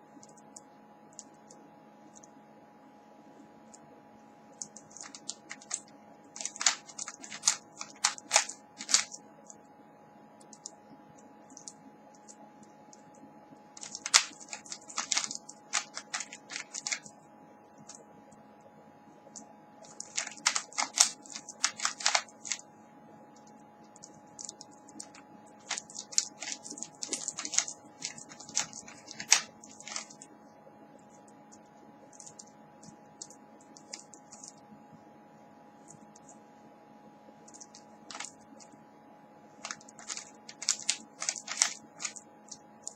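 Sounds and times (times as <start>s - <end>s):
faint steady hum: 0.0s - 42.9s
puzzle cube clattering clicks: 4.6s - 9.2s, 11.5s - 12.4s, 13.8s - 17.1s, 19.8s - 22.6s, 23.9s - 30.3s, 32.1s - 34.6s, 37.5s - 38.7s, 39.6s - 42.9s.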